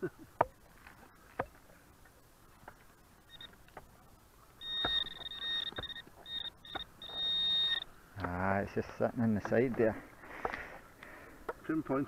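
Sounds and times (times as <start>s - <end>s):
metal detector high tone: 4.6s - 7.9s.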